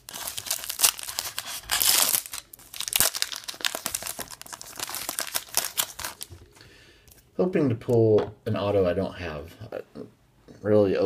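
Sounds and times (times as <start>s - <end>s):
wrapper ripping open: 0.0s - 6.3s
wrapper crackling: 0.0s - 6.4s.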